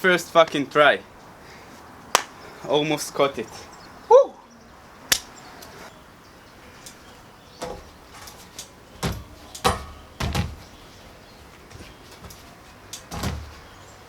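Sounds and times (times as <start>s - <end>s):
dull thumps and knocks: 7.6s - 10.9s, 13.0s - 13.8s.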